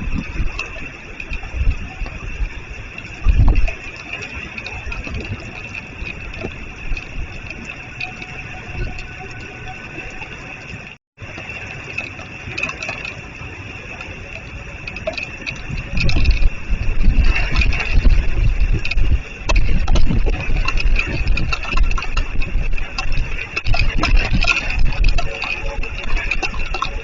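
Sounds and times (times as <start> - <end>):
storm wind buffeting microphone: 0.0 - 27.0.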